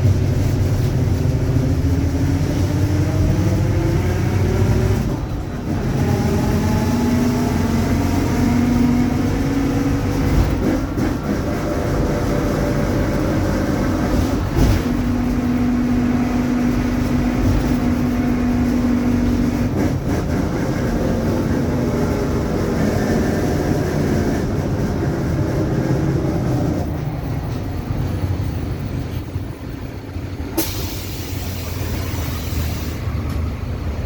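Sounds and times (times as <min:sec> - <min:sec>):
bus drive train whine: 0:00.0 - 0:34.0
air hiss: 0:30.6 - 0:33.1.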